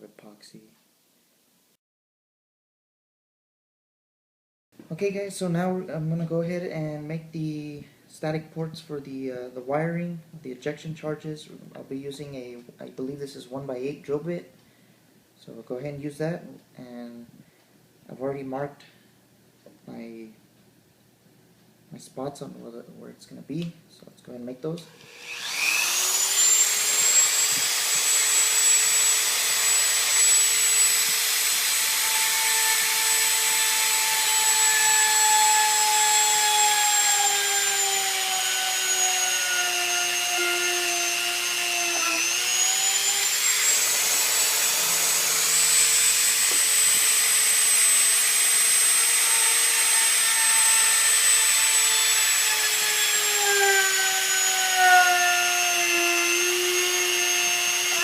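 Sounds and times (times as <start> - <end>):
electric drill whining: 24.9 - 58.0.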